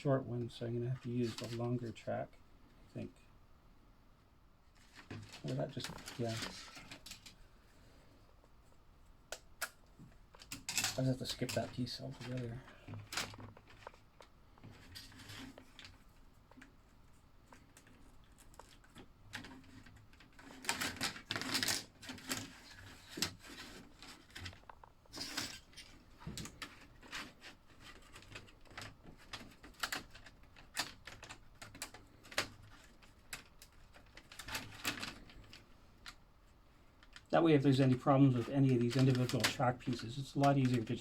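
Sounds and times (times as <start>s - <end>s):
plastic pieces rattling: 17.8s - 36.2s, 38.4s - 41.0s.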